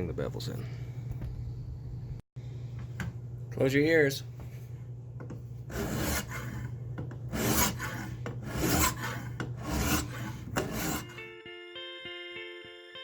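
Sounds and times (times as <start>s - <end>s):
file rasping on steel blade: 5.7s - 6.7s, 7.3s - 11.2s
guitar music: 11.1s - 13.0s.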